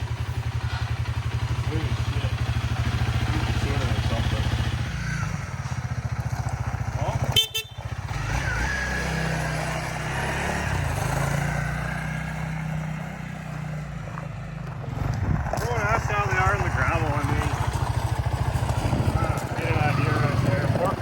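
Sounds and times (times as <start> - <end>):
engine idling: 0.0 - 21.0
short sharp horn toot: 7.3 - 8.0.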